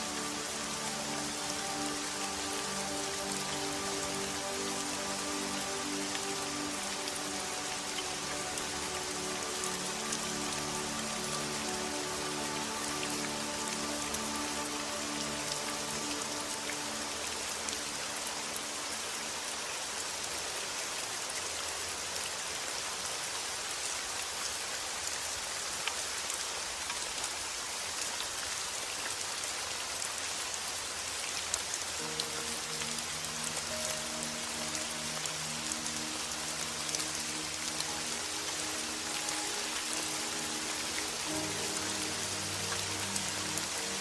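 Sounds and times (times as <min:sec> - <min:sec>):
soft sustained music notes: 0:00.0 - 0:21.3, 0:31.8 - 0:44.0
steady rain falling: 0:00.0 - 0:44.0.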